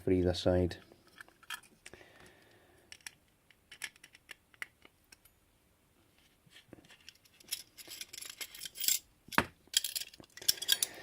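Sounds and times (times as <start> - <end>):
small hard parts clicking: 1.0 - 5.3, 7.0 - 11.0.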